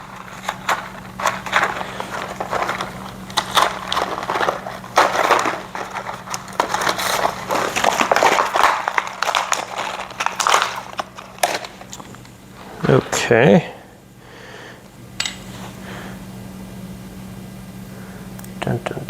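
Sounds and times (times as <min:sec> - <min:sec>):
small parts clicking and rattling: 0:00.0 - 0:12.3
plastic packaging crinkling: 0:00.0 - 0:13.2.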